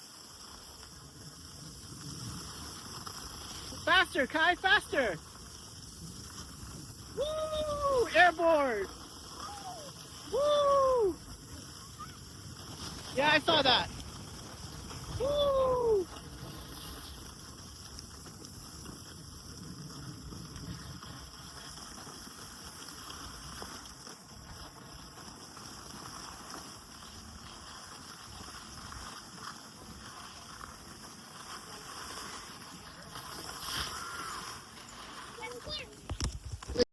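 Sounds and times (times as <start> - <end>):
skis sliding on snow: 0.0 - 36.9
person whooping: 7.1 - 8.2, 9.4 - 11.3, 15.1 - 16.2.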